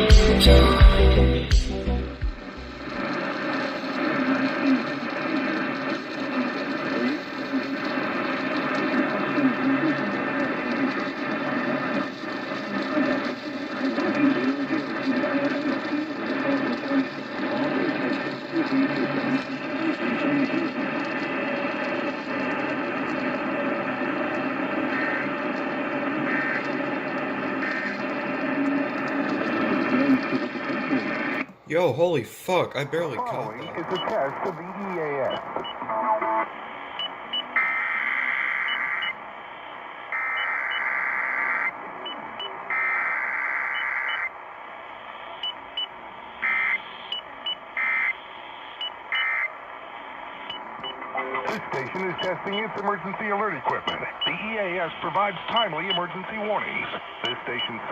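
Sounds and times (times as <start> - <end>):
am radio static and hiss: 0.0 - 57.9
emergency alert data tones: 32.5 - 36.4, 40.1 - 44.3.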